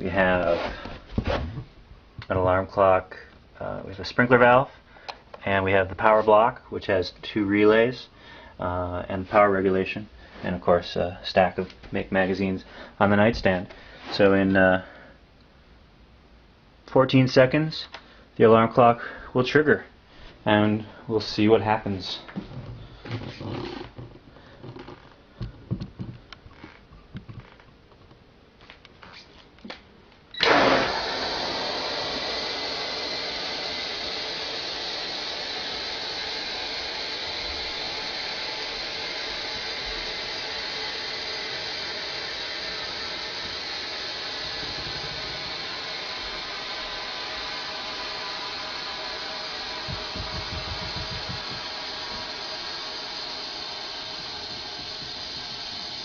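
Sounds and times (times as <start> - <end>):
compressed air hissing: 30.4 - 56.0.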